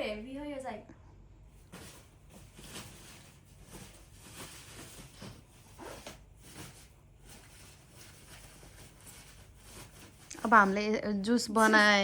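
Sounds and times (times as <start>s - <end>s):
packaging rustling: 1.7s - 10.9s.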